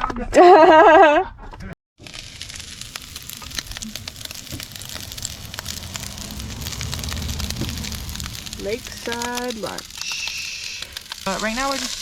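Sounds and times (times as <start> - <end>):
rice sizzling in a pan: 2.0 - 12.0
low hum: 2.3 - 11.3.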